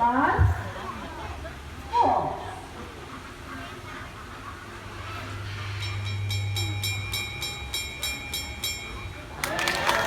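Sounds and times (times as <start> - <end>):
small bell ringing: 5.8 - 9.3.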